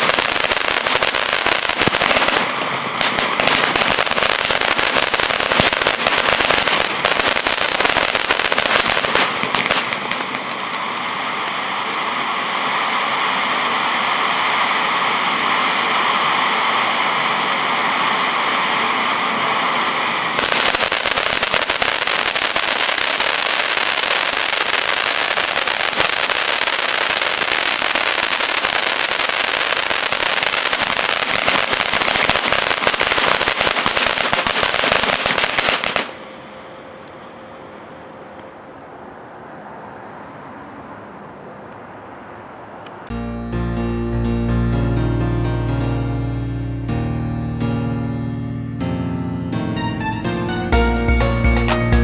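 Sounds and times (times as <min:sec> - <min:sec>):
firework whistling hiss: 0:00.0 - 0:37.1
firework crackling: 0:00.0 - 0:39.0.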